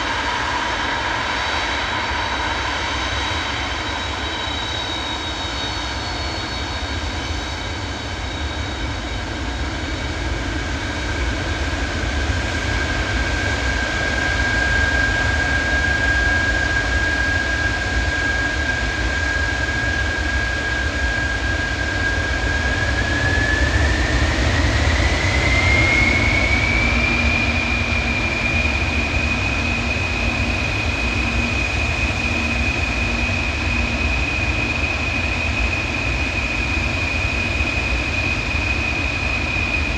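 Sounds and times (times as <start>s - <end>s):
jet engines whining and rumbling: 0.0s - 39.9s.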